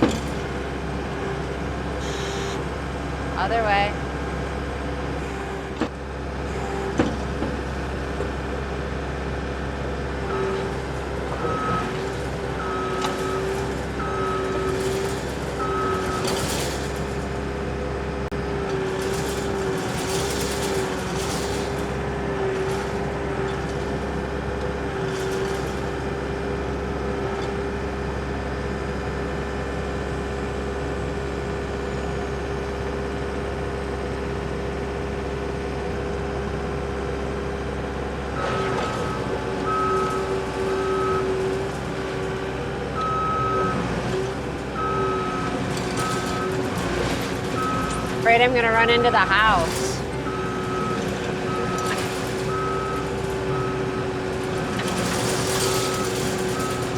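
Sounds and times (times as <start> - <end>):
diesel engine running: 0.0 - 56.9
backup alarm beeping: 2.0 - 2.7, 44.8 - 56.9
metal clanks: 10.8 - 17.6, 18.7 - 24.0, 45.5 - 56.9.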